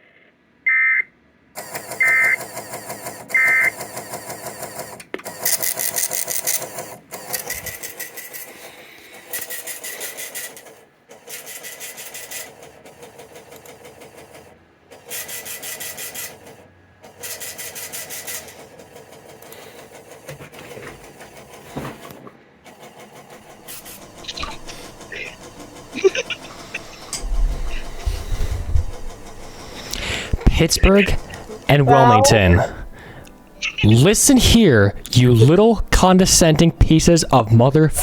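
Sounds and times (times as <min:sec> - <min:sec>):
pulsing radio interference buzz: 0:24.2 - 0:32.9.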